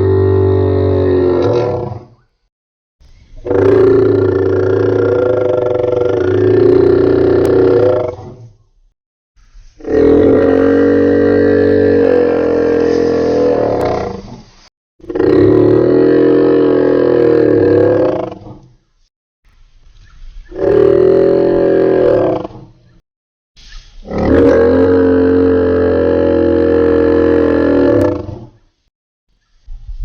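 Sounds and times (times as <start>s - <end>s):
dinosaur roars: 0.0s - 2.1s, 3.4s - 8.4s, 9.8s - 14.3s, 15.0s - 18.6s, 20.6s - 22.7s, 24.0s - 28.5s.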